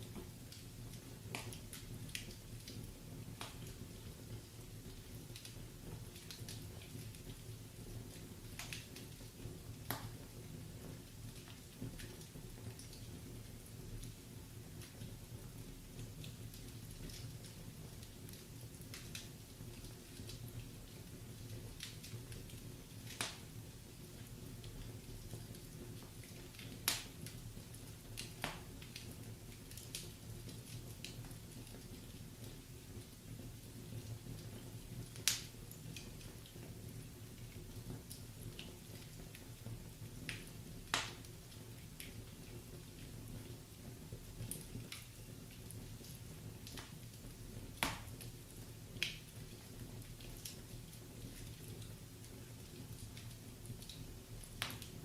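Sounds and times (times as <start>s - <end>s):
wood fire crackling: 0.0s - 55.0s
sharp pops of burning wood: 1.3s - 2.8s, 3.4s - 3.8s, 8.5s - 10.3s, 23.0s - 23.5s, 25.5s - 27.4s, 28.1s - 30.1s, 35.1s - 36.2s, 40.2s - 41.4s, 44.4s - 48.4s, 49.0s - 49.6s, 53.2s - 55.0s.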